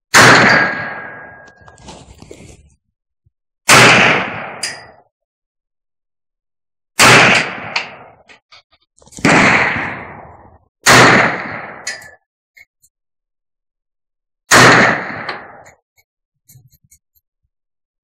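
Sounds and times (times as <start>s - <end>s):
rifle shots echoing: 0.1s - 1.6s, 3.7s - 4.7s, 7.0s - 8.1s, 9.2s - 11.9s, 14.5s - 15.7s.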